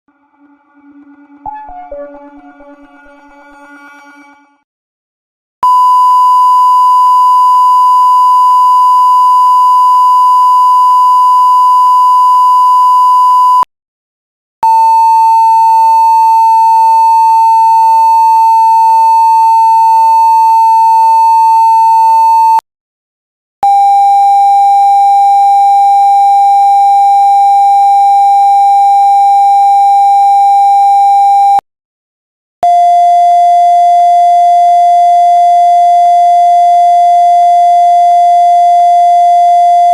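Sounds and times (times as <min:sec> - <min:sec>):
censor bleep tone: 0:05.6 - 0:13.7, 0:14.6 - 0:18.1, 0:18.7 - 0:20.1, 0:20.7 - 0:22.6, 0:23.6 - 0:31.6, 0:32.6 - 0:39.9.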